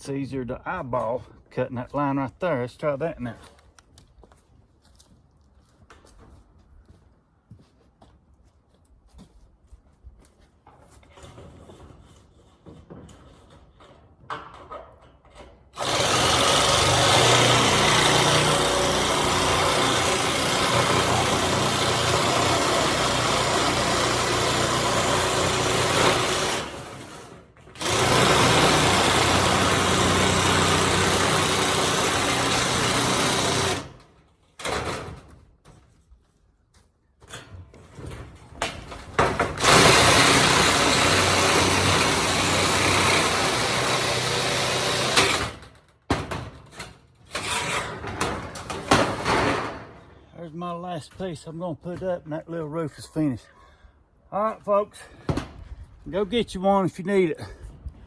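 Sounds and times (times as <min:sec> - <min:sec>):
drill metal shear cutting sheet metal: 0:15.8 - 0:34.0, 0:39.6 - 0:45.6, 0:47.3 - 0:49.7.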